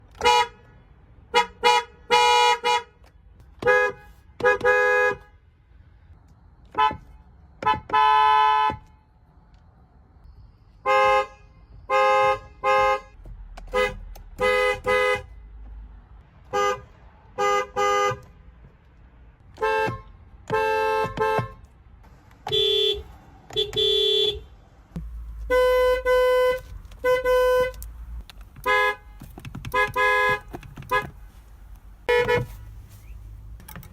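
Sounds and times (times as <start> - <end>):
vehicle horns honking: 0.1 - 3.0, 3.6 - 5.4, 6.7 - 8.9, 10.8 - 15.4, 16.5 - 18.3, 19.5 - 21.7, 22.4 - 24.5, 25.2 - 31.4, 32.0 - 33.4.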